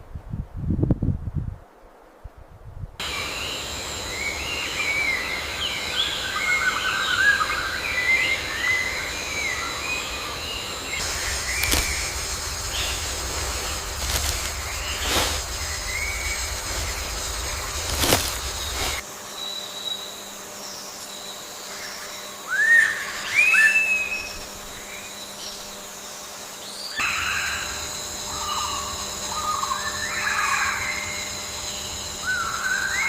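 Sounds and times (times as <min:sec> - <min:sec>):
birds chirping and warbling: 0:03.0 - 0:19.9
steady high-pitched drone: 0:07.6 - 0:20.1
low rumble: 0:11.0 - 0:19.0.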